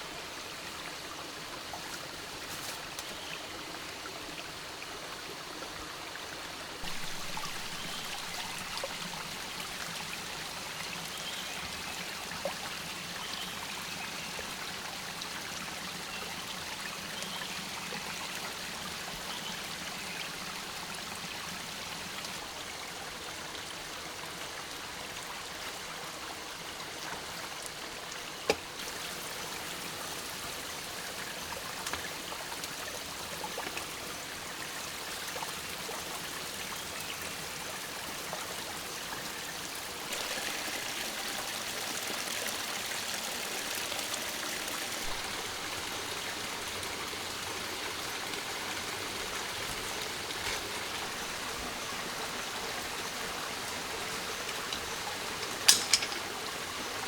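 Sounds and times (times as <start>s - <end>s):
water rushing: 37.4s - 57.0s.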